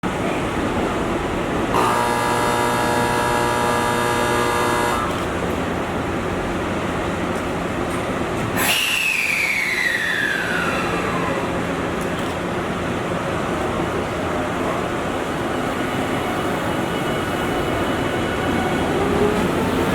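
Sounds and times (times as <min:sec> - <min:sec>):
railway rumble: 0:00.0 - 0:19.9
train horn blast: 0:01.7 - 0:05.2.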